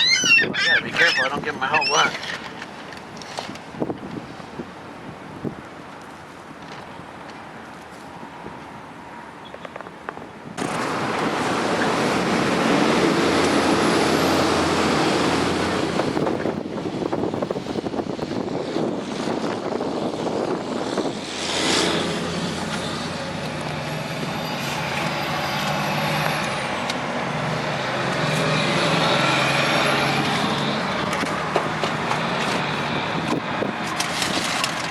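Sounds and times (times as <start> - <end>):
road noise: 0.0 - 34.9
truck engine hum: 19.7 - 34.9.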